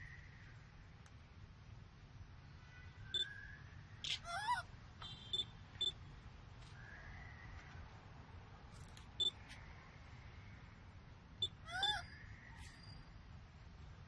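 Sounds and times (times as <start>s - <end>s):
monkey squeaking: 4.0s - 4.6s, 11.4s - 12.1s.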